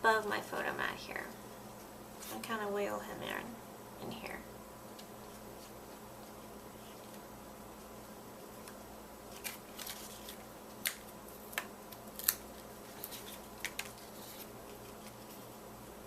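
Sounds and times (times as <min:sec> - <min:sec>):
paper crackles and tool clicks: 0:08.6 - 0:15.5.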